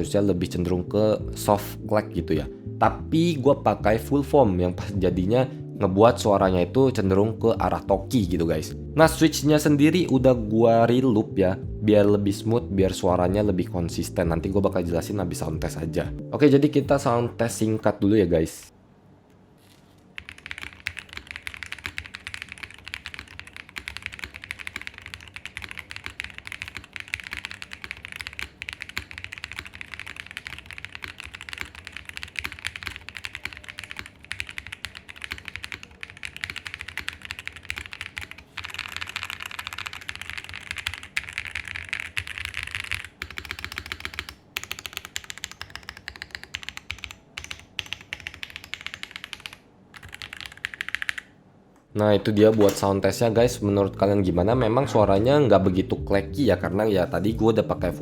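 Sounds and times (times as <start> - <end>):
fast typing on mechanical keyboard: 20.2 - 51.3.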